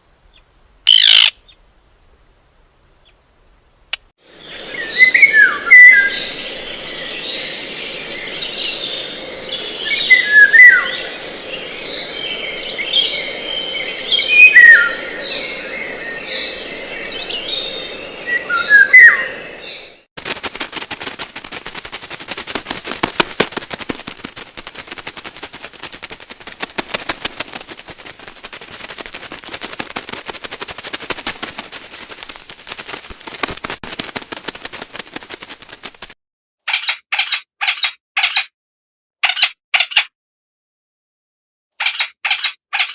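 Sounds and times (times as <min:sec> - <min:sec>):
whistled bird chirps: 0:12.8 - 0:20.0
rapid clicking: 0:20.2 - 0:36.2.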